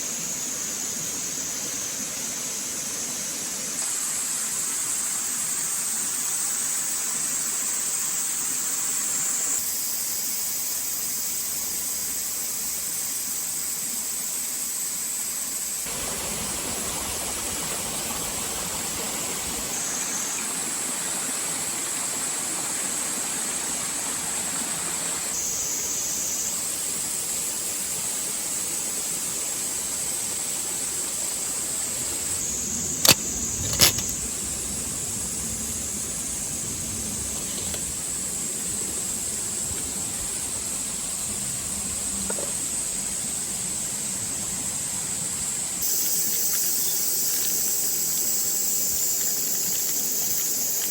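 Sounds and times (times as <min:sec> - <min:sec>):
high-pitched hiss or buzz: 0:00.0 - 0:21.0, 0:25.3 - 0:44.2, 0:45.8 - 0:50.9
sharp clicks: 0:33.0 - 0:34.2.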